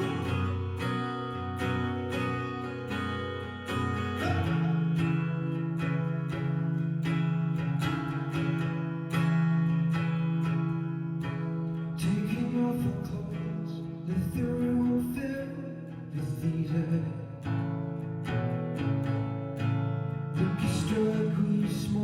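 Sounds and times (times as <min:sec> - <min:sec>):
person singing: 0:00.0 - 0:05.7
acoustic guitar strumming: 0:00.0 - 0:22.0.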